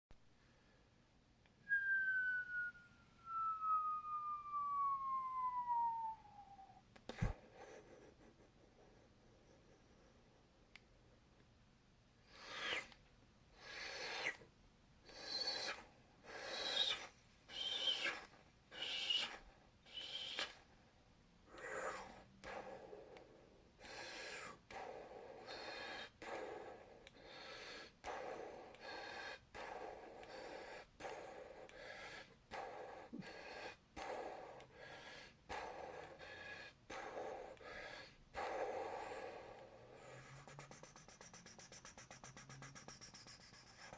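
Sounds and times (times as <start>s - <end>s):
man making zapping mouth noises: 40.1s - 43.6s.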